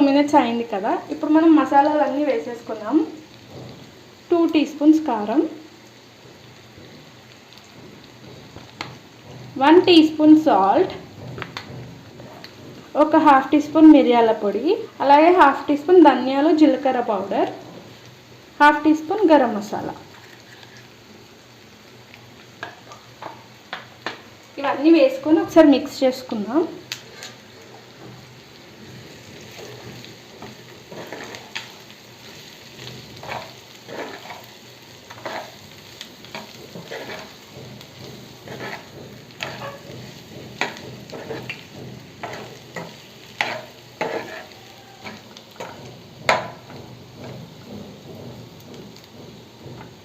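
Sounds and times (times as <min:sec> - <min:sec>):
frying sizzle: 0:00.0 - 0:50.0
spoon scraping a pan: 0:20.1 - 0:20.9, 0:27.0 - 0:47.7.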